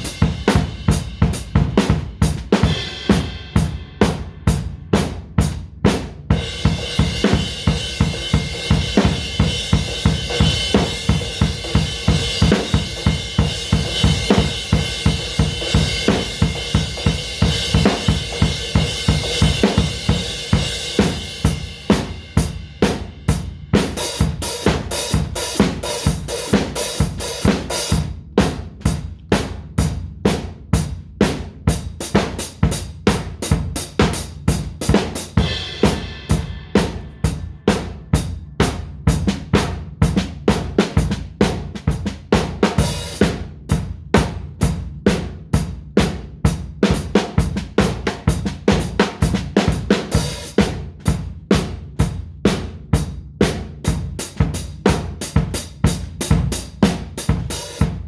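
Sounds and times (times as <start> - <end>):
hi-hat strikes: 0.0 - 3.8
drum kit groove: 0.0 - 58.0.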